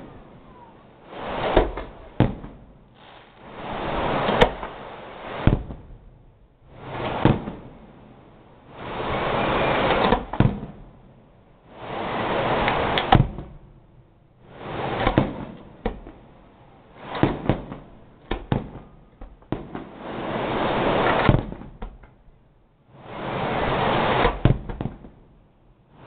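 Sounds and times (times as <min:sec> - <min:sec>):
firework rockets whooshing: 0:00.0 - 0:22.3, 0:22.9 - 0:26.0
firework bangs and crackles: 0:00.0 - 0:26.0
crackling pops: 0:01.4 - 0:05.9.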